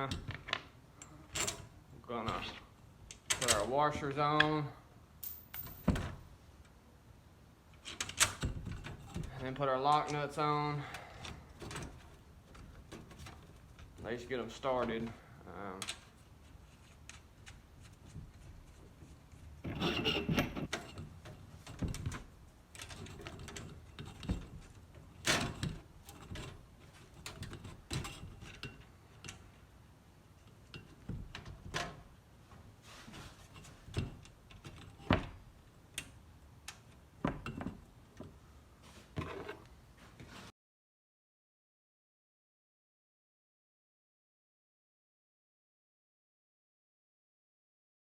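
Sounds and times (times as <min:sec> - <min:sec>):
metal hardware and tools clinking: 0:05.2 - 0:06.0
metal scraping and rattling: 0:19.6 - 0:22.0.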